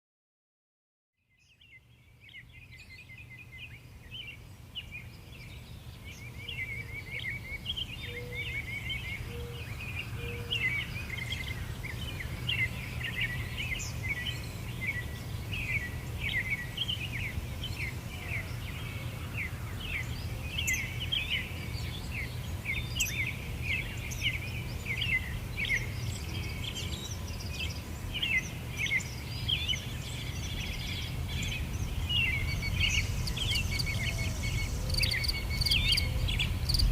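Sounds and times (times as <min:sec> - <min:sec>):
small birds chirping and twittering: 0:01.2 - 0:36.9
steady low rumble: 0:30.4 - 0:36.9.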